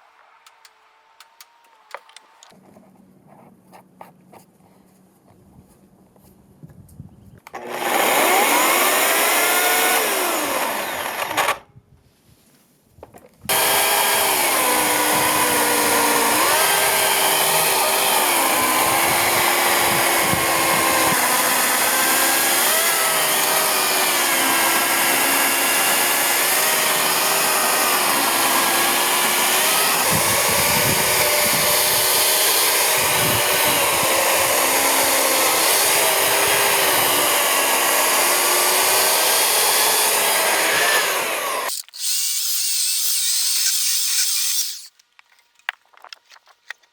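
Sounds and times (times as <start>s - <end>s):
chainsaw cutting wood: 7.5s - 11.6s, 13.5s - 45.0s.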